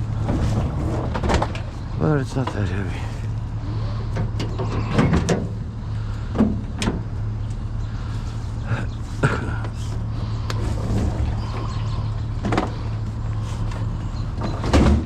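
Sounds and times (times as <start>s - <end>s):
vehicle engine running: 0.0s - 15.0s
sharp knocks and clunks: 4.1s - 5.6s, 6.3s - 7.2s, 14.4s - 15.0s.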